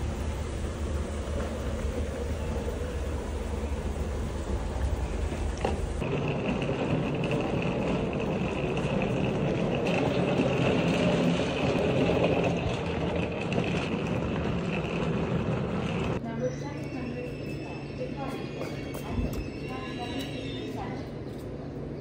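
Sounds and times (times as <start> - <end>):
vehicle engine rumble: 0.0 - 16.2.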